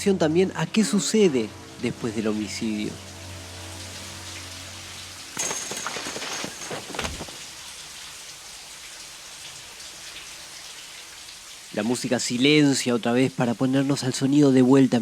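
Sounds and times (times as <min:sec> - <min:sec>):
shower water running: 0:02.6 - 0:12.7
dull thud: 0:05.4 - 0:07.5.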